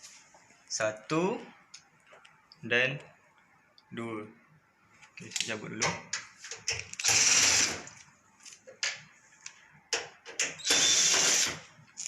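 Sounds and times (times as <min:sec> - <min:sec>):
cordless drill whine: 0:07.0 - 0:07.8, 0:10.6 - 0:11.6.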